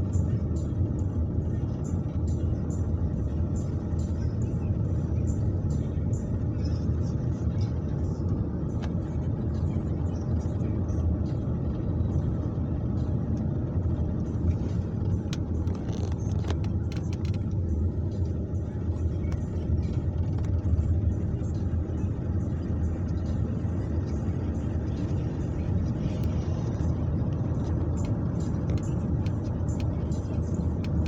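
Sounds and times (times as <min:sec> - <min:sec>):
car driving on snowy road: 0:00.0 - 0:31.0.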